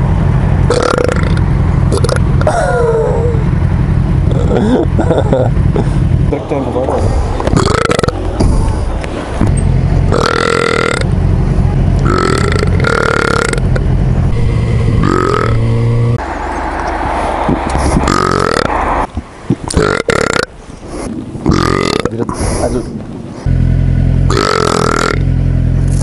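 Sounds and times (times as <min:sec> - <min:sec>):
motorcycle engine: 0:00.0 - 0:20.8, 0:23.4 - 0:26.0
man burping loudly: 0:00.7 - 0:03.4, 0:04.3 - 0:05.2, 0:07.0 - 0:08.3, 0:09.4 - 0:11.1, 0:12.0 - 0:13.8, 0:15.0 - 0:15.6, 0:18.0 - 0:18.7, 0:19.6 - 0:20.6, 0:21.4 - 0:22.4, 0:24.3 - 0:25.3
wind noise: 0:06.9 - 0:10.1, 0:13.8 - 0:19.9, 0:20.5 - 0:23.5.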